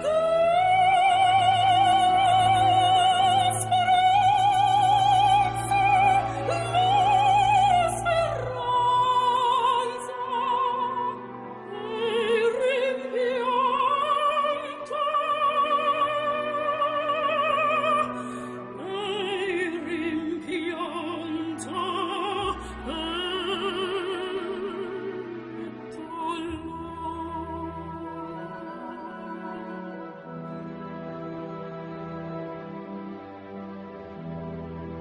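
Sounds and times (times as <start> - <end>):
operatic singing with vibrato: 0.0 - 35.0.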